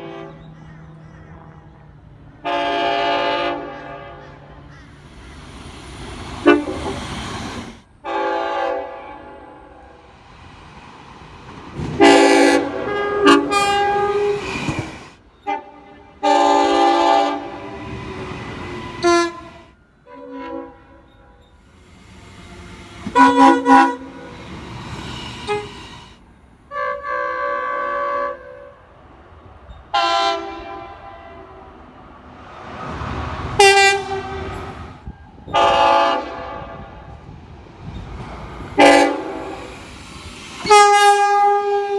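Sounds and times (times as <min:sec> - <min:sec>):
locomotive horn blasts: 0:00.0 - 0:00.4, 0:02.4 - 0:10.0, 0:11.8 - 0:28.8, 0:29.9 - 0:31.6, 0:33.6 - 0:37.2, 0:38.6 - 0:41.9.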